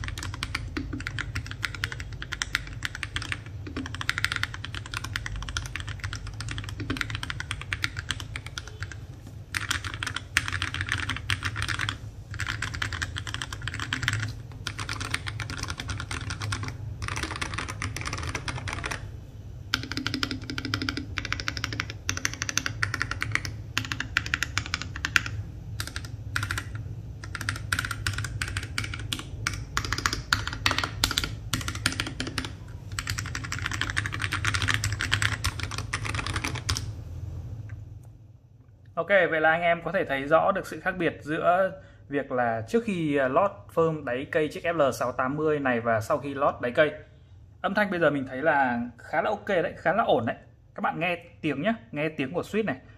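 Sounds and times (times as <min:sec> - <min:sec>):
fast mechanical keyboard typing: 0:00.0 - 0:19.1, 0:19.7 - 0:36.9
low steady hum: 0:00.0 - 0:52.9.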